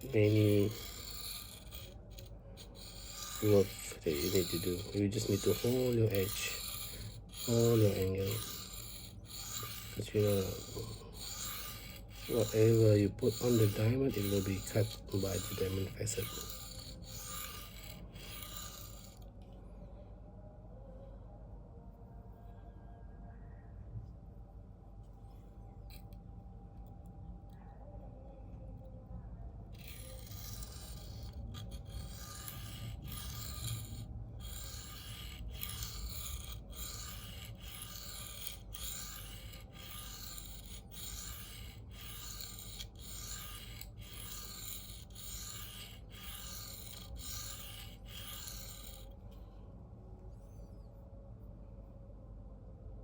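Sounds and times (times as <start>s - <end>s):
knife scraping on sharpening plate: 0.0s - 19.2s, 29.8s - 49.1s.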